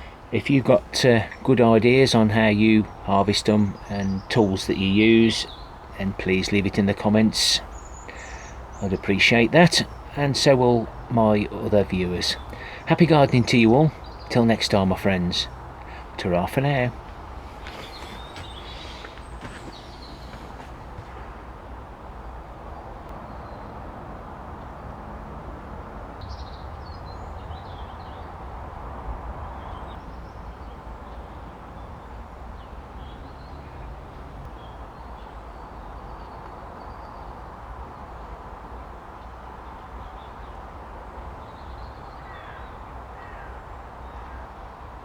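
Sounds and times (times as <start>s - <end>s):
birds chirping: 0.0s - 24.0s, 26.2s - 45.0s
low outdoor rumble: 0.0s - 29.8s.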